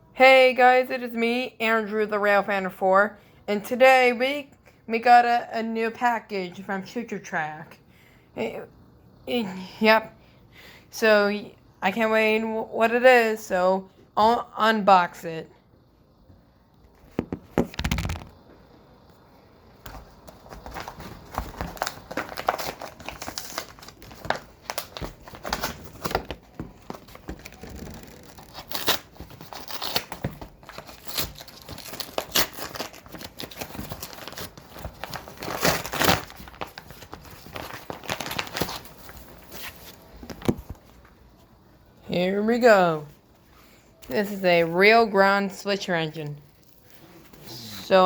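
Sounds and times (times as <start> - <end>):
packaging crinkling and rustling: 19.9 - 41.1, 46.4 - 47.4
packaging tearing: 20.7 - 39.8.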